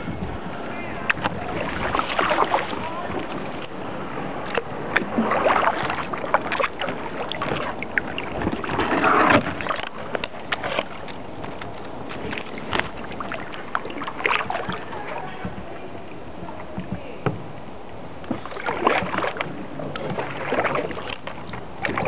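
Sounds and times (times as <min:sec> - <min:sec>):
paddle swishing and splashing water: 0:00.0 - 0:22.0.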